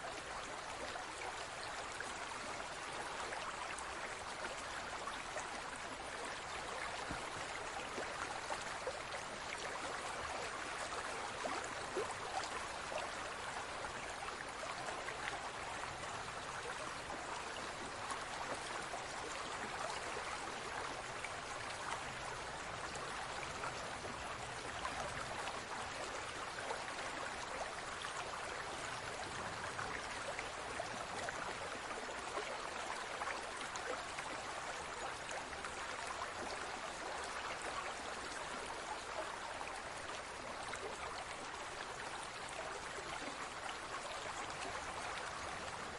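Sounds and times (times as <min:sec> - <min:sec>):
aquarium water trickling and bubbling: 0:00.0 - 0:45.9.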